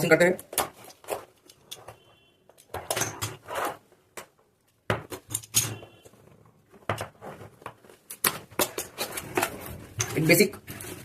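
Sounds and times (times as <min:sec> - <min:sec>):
packaging rustling: 0:00.4 - 0:02.0, 0:07.2 - 0:11.0.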